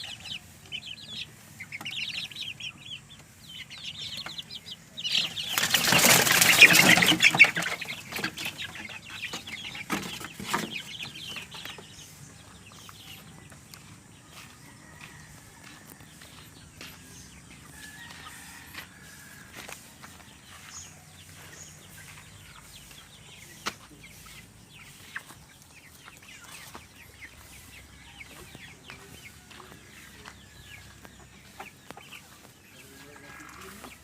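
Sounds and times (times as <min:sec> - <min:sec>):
chickens clucking softly: 0:00.0 - 0:34.0.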